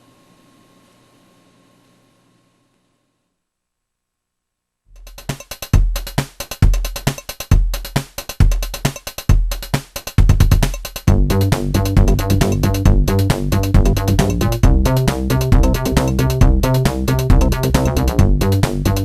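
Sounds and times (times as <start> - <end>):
heavy kick drum: 4.9 - 19.0
electronic music: 5.0 - 19.0
pulsing bass line: 10.3 - 19.0.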